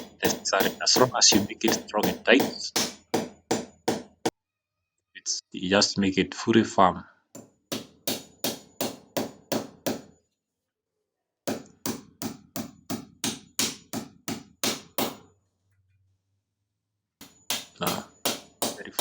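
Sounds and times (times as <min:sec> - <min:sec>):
hammer striking: 0:00.0 - 0:04.3, 0:07.4 - 0:10.1, 0:11.5 - 0:15.2, 0:17.2 - 0:19.0.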